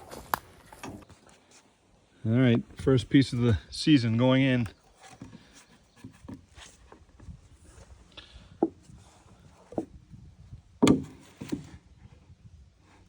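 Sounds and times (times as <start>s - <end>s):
wooden deck board knocking: 10.8s - 11.7s.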